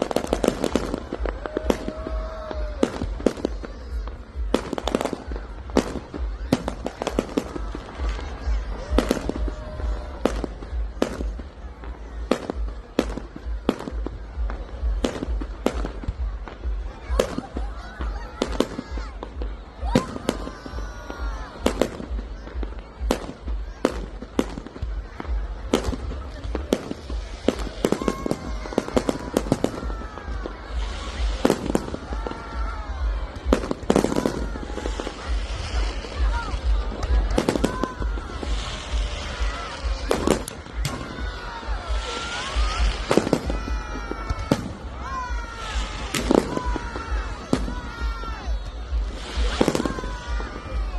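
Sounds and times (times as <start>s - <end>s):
fireworks bangs: 0.0s - 50.9s.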